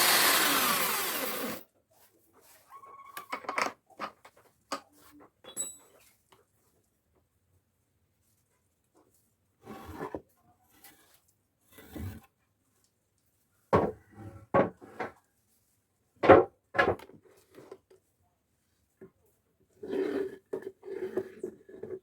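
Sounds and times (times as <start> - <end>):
wood scraping: 0.0 - 1.6.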